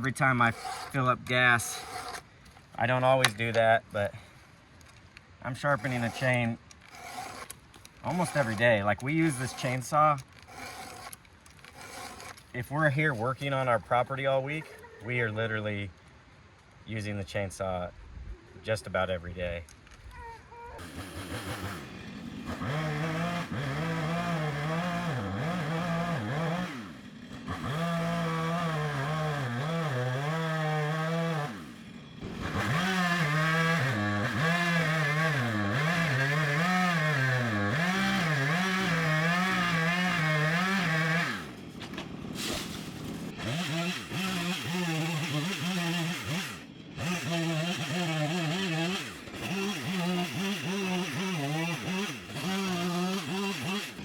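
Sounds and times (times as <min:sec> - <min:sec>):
chainsaw running at high revs: 0:00.0 - 0:02.2, 0:05.6 - 0:11.1, 0:11.7 - 0:12.4, 0:20.8 - 0:54.0.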